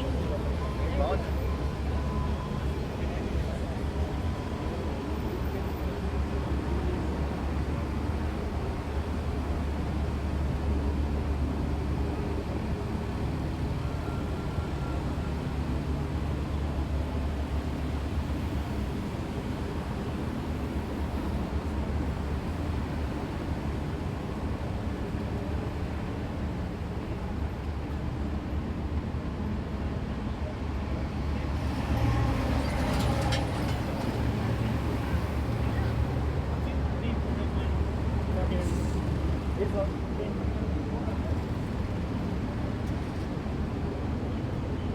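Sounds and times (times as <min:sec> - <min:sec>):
low rumble of city street: 0:00.0 - 0:44.9
road traffic rumbling: 0:29.6 - 0:44.6.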